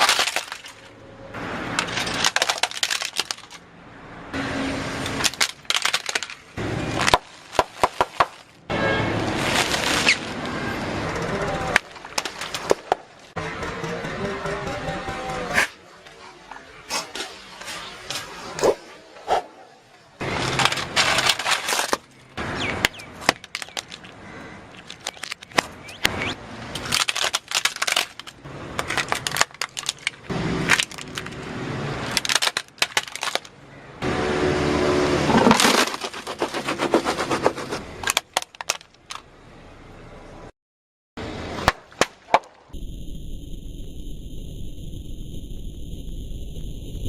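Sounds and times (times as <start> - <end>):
brittle crunching and cracking: 9.4 - 10.4, 22.9 - 25.7, 26.8 - 31.4, 32.1 - 33.5
steady hum: 42.8 - 47.0.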